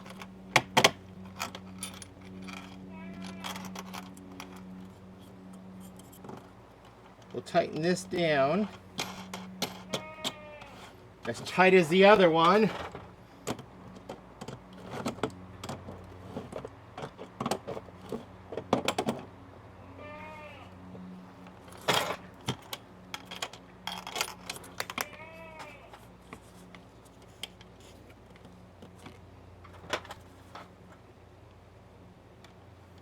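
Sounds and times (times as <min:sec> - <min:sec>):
metallic clicks and key rattles: 0:00.0 - 0:05.0
steady low hum: 0:00.0 - 0:33.0
goat bleating: 0:02.9 - 0:03.8, 0:09.8 - 0:11.0, 0:19.8 - 0:20.8, 0:24.9 - 0:26.0.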